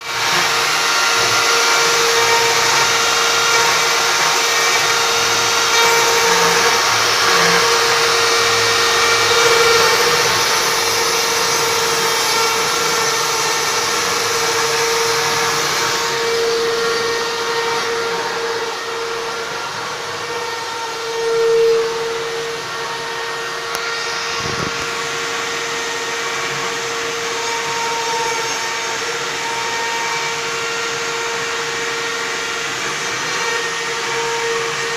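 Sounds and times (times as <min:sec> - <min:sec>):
router spindle whining cutting wood: 0:00.0 - 0:34.9.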